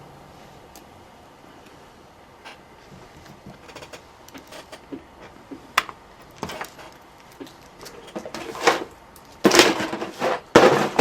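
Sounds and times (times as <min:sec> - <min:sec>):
tools and parts handled on workbench: 0:02.4 - 0:11.0.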